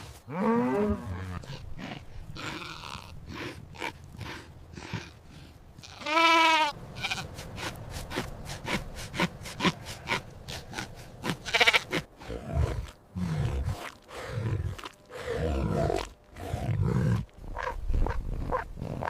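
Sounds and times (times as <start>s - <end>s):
sheep bleating: 5.8s - 7.3s, 9.6s - 12.0s.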